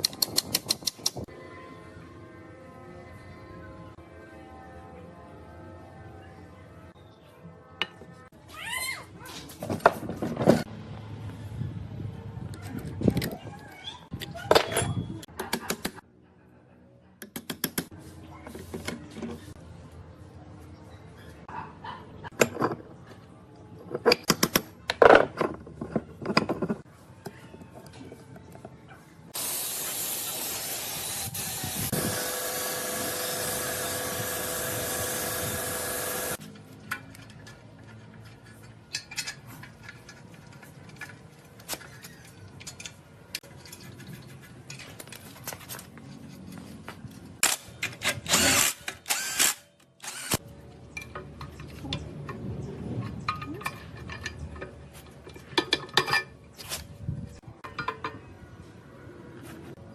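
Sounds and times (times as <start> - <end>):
tools clicking and clinking: 0.0 - 1.3, 36.3 - 45.6, 47.4 - 56.4, 57.6 - 58.3
power tool whining: 29.4 - 36.4, 48.3 - 50.4.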